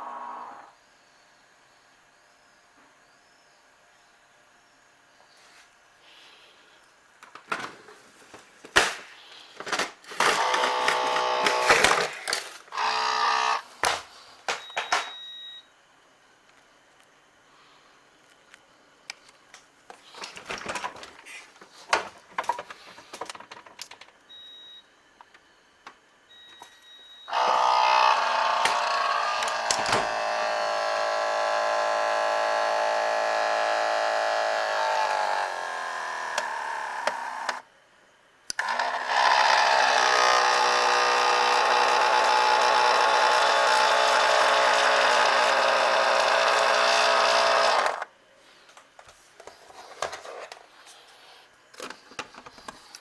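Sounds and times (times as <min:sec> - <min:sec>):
refrigerator buzzing drone: 0:00.0 - 0:08.0, 0:08.7 - 0:15.7, 0:26.3 - 0:48.8.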